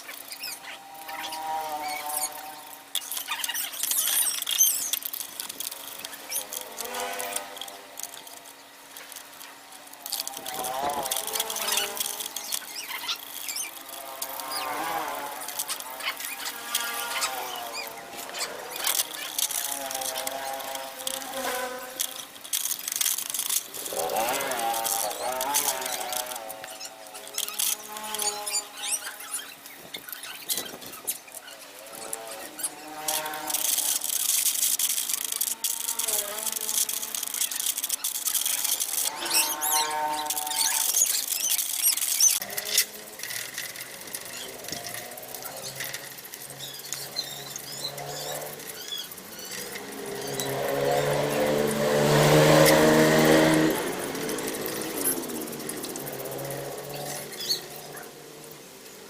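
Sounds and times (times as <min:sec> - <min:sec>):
small electric motor humming: 0:00.0 - 0:59.0.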